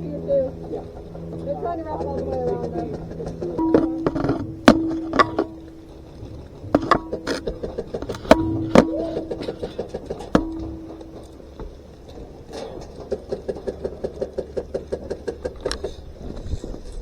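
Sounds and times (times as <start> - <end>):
bb striking metal: 3.5 - 11.5.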